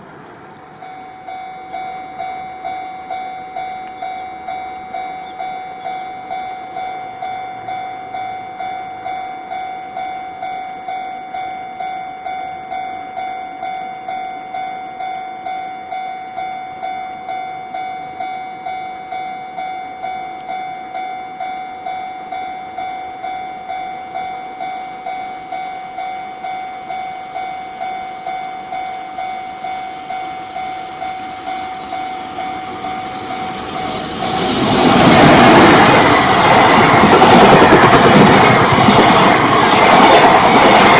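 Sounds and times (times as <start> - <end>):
level crossing warning bell ringing: 0.0 - 40.9
train rushing past: 0.0 - 40.9.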